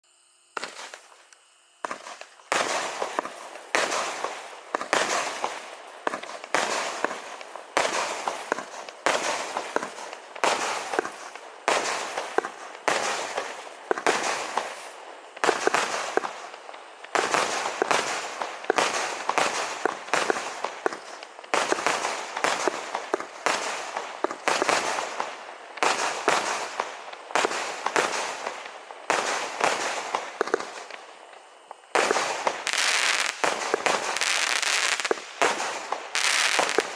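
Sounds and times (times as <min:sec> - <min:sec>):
firework bangs: 0:00.5 - 0:36.9.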